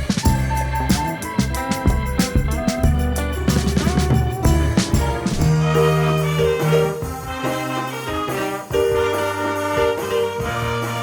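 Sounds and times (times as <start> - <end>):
swing band music: 0.0 - 11.0.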